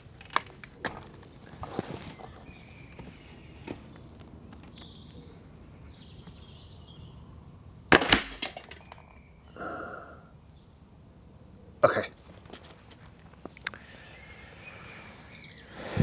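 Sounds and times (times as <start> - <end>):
air rifle shot: 7.9 - 8.5.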